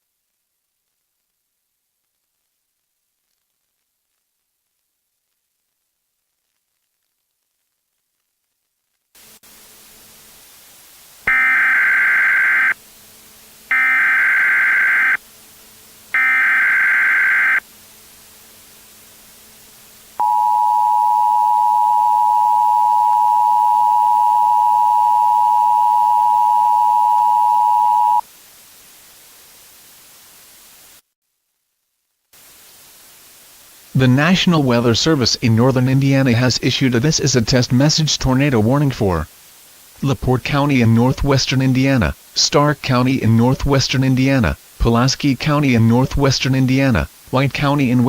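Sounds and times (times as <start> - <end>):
faint hiss and hum: 0.0 - 48.0
screeching digital data bursts: 11.3 - 12.8, 13.7 - 15.2, 16.2 - 17.6
two-tone attention signal: 20.2 - 28.2.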